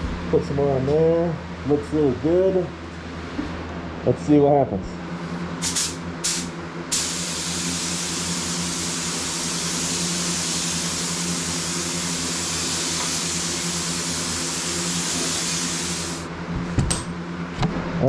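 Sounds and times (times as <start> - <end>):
low machine hum: 0.0 - 18.0
paint spray gun hissing: 5.6 - 16.3.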